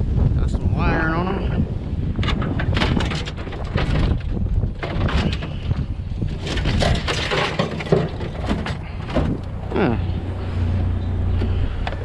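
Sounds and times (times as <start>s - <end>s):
wind buffeting microphone: 0.0s - 12.0s
scrap items clattering: 6.3s - 10.8s.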